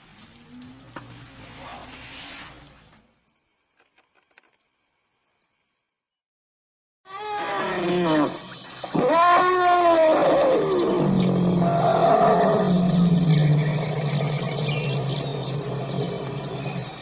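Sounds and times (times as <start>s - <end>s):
elephant calling: 7.1s - 16.8s.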